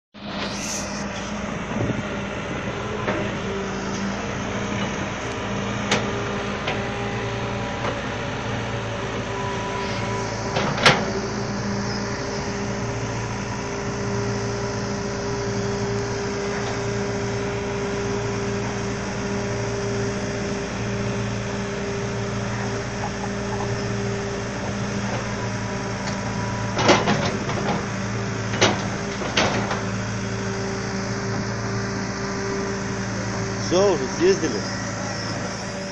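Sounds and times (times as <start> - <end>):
excavator diesel engine running: 0.2 - 35.9.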